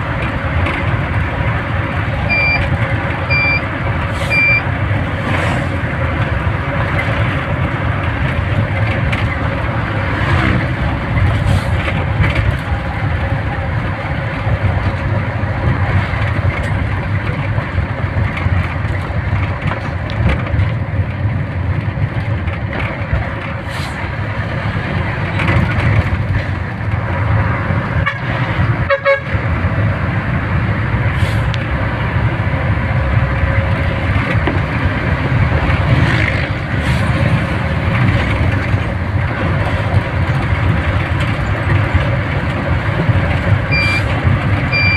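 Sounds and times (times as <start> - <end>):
vehicle engine and road noise: 0.0 - 44.9
car horn toot: 28.9 - 29.3, 43.7 - 44.1.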